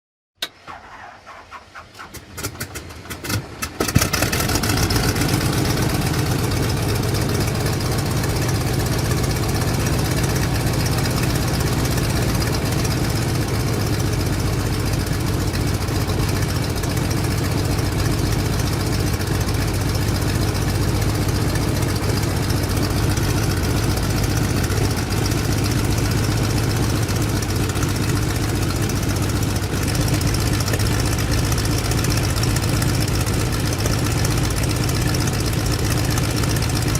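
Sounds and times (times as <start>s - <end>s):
aircraft engine starter clicking: 0.4s - 4.1s
radial engine idling: 5.0s - 36.9s.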